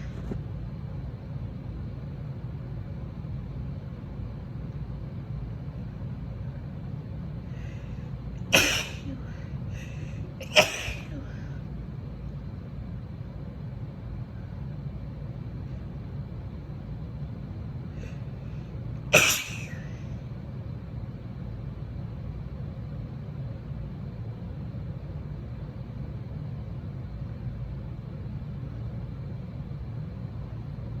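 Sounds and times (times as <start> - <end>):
steady low rumble: 0.0 - 31.0
catch of breath: 7.5 - 10.2
woman sneezing: 8.5 - 11.5, 19.1 - 20.0.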